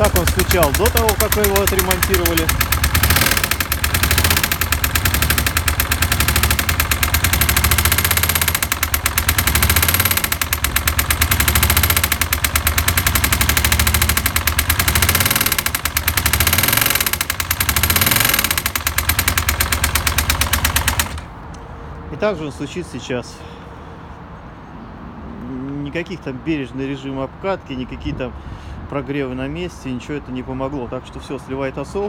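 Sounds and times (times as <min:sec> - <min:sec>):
motorcycle engine knocking: 0:00.0 - 0:21.4.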